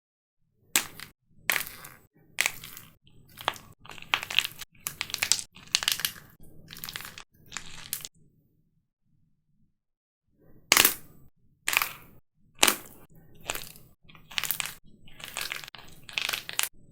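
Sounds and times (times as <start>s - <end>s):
dried clay cracking and crushing: 0.8s - 8.1s, 10.7s - 11.1s, 11.7s - 16.8s.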